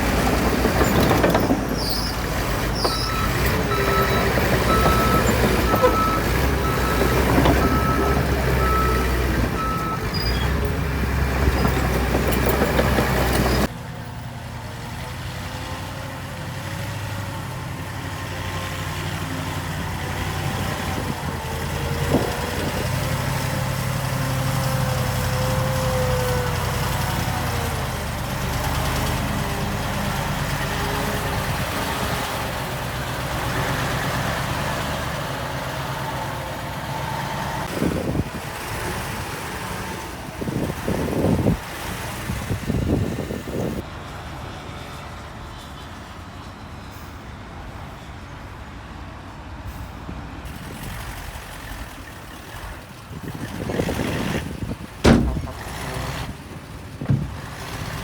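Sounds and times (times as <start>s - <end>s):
heavy machinery engine running: 0.0s - 43.8s, 50.5s - 58.0s
reversing alarm beeping: 2.8s - 10.2s.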